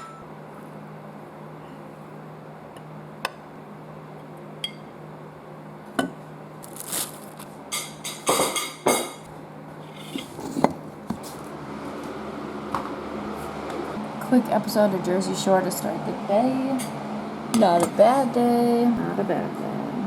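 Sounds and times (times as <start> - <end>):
steady low hum: 0.0 - 20.0
dishes and cutlery clattering: 7.7 - 9.3.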